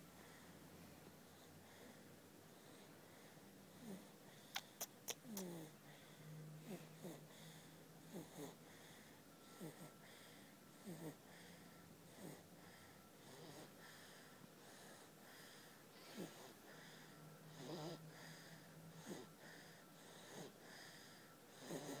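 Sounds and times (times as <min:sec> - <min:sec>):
baby snoring: 0:06.6 - 0:08.6, 0:10.8 - 0:11.3, 0:13.2 - 0:14.0, 0:17.5 - 0:22.0.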